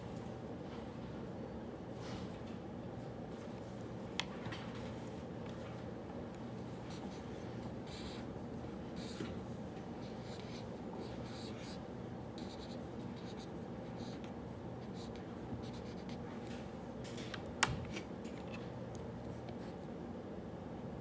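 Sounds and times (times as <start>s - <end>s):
low room hum: 0.0s - 21.0s
pen scratching on paper: 12.4s - 16.2s.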